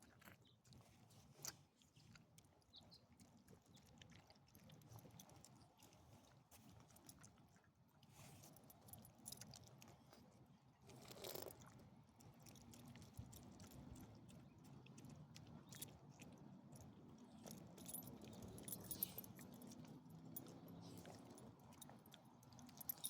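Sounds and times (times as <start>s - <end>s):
small metal pieces jingling: 17.8s - 19.3s.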